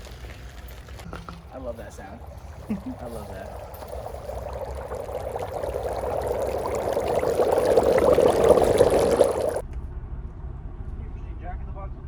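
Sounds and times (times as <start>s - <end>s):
dry ice bubbling in water: 0.0s - 9.6s.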